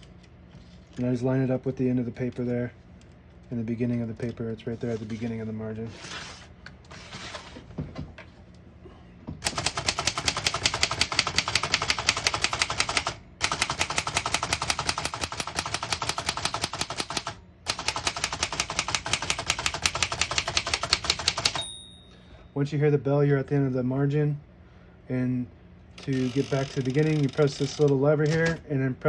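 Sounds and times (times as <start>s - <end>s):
typewriter key strikes: 9.4s - 21.7s.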